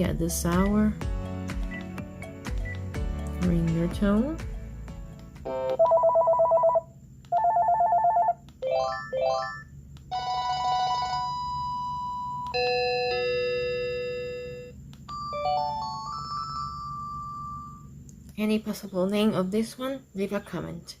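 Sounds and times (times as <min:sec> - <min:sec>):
cordless phone ringtones: 0:05.5 - 0:06.8, 0:07.4 - 0:17.9.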